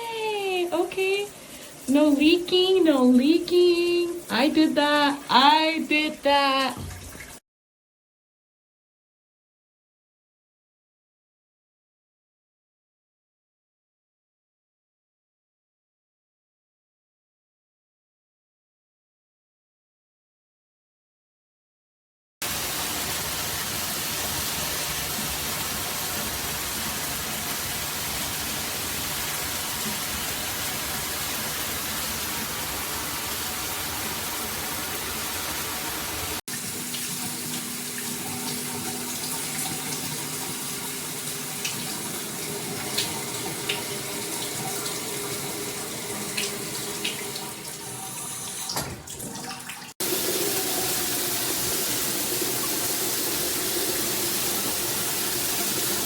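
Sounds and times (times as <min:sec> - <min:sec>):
water spraying from shower head: 0:22.4 - 0:48.8, 0:50.0 - 0:56.0.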